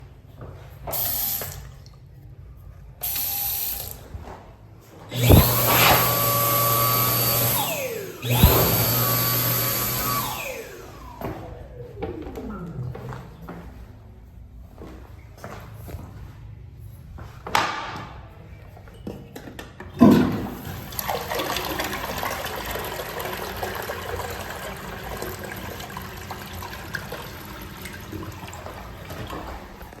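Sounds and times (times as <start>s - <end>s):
toilet flushing: 5.1s - 11.6s, 20.0s - 30.0s.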